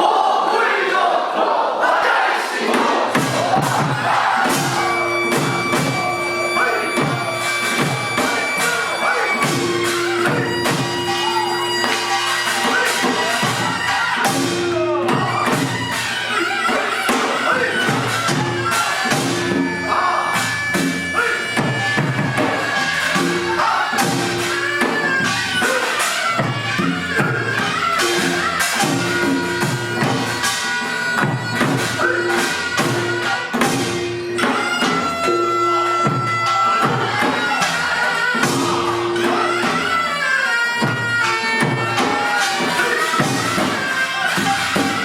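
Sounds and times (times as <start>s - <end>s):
percussion strikes: 2.6s - 45.0s
reed wind instrument: 3.1s - 45.0s
held pitched tones: 3.2s - 45.0s
gong strikes: 3.6s - 8.8s.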